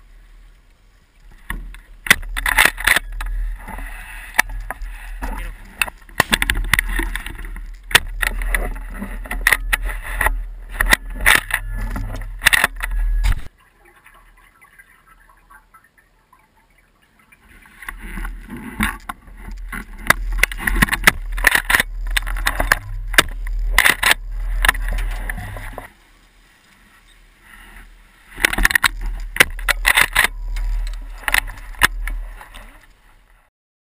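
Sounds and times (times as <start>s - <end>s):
scraping rubbing and knocking: 1.4s - 13.5s, 17.6s - 25.9s, 28.3s - 32.9s
low rumble: 19.3s - 25.9s.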